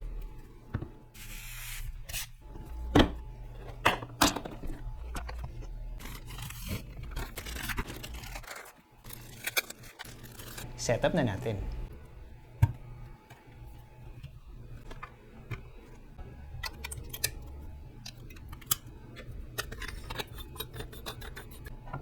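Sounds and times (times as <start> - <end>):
packaging scraping and tearing: 5.1 - 10.7.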